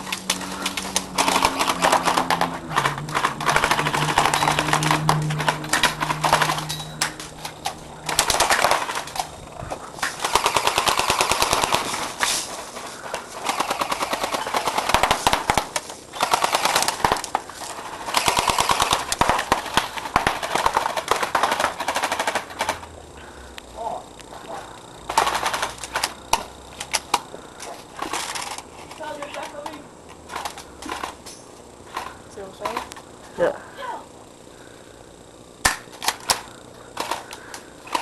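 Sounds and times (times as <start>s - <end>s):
airsoft gun firing full auto: 0.1s - 7.0s, 8.0s - 9.3s, 10.0s - 22.9s, 35.6s - 37.3s.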